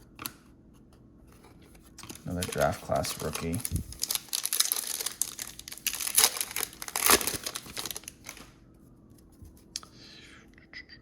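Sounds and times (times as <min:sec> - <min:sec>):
plastic wrapper tearing and crinkling: 0:01.9 - 0:08.5.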